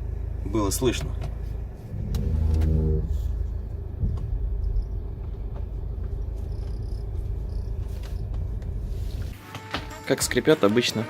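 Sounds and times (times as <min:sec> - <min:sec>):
road rumble inside car: 0:00.0 - 0:09.4
blower motor creaking: 0:01.8 - 0:08.9
light knocks over bumps: 0:03.9 - 0:08.8.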